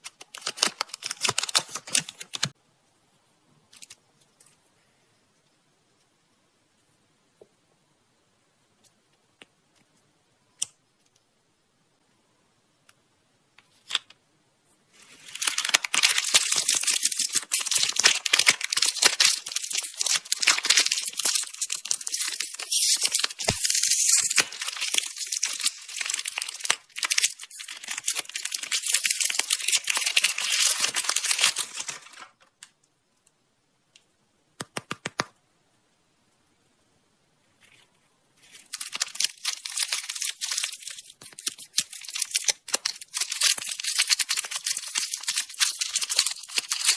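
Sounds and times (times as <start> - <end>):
candy wrappers crinkling: 0.0 - 2.5, 15.0 - 32.4, 38.4 - 46.9.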